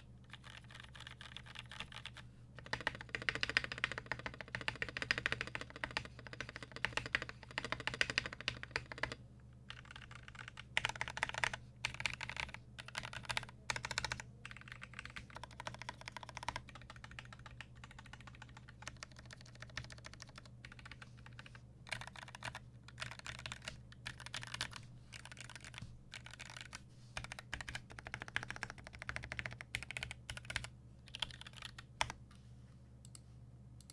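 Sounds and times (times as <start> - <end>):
faint low hum: 0.0 - 33.9
typing on mechanical keyboard: 0.2 - 32.2.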